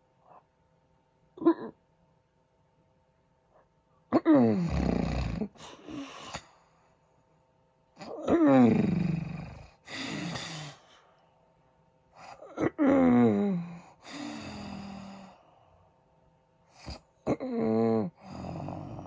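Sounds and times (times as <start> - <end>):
man snoring loudly: 4.3 - 5.6, 8.1 - 10.8, 16.9 - 19.0
breathy breathing: 9.8 - 11.4, 13.5 - 15.9.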